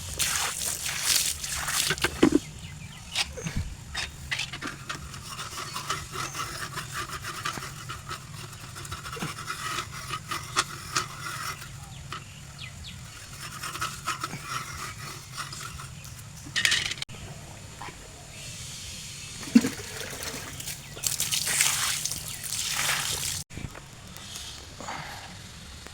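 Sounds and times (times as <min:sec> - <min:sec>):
brush scrubbing hard surface: 0:00.0 - 0:16.6.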